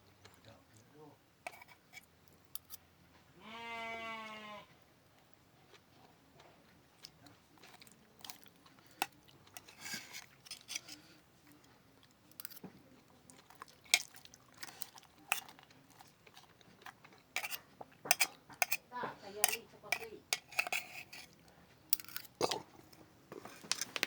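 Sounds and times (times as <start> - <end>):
chewing with wet mouth smacks: 5.1 - 18.6, 21.3 - 24.0.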